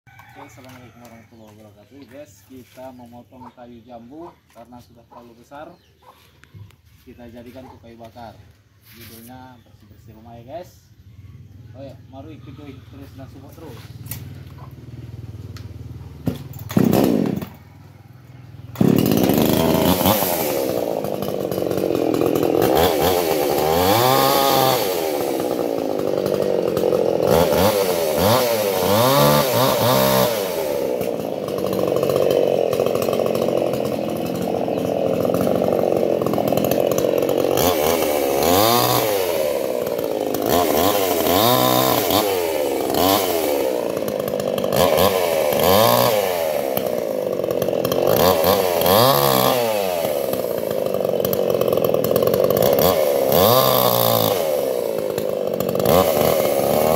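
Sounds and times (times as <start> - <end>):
chainsaw revving while cutting wood: 13.1 - 56.9.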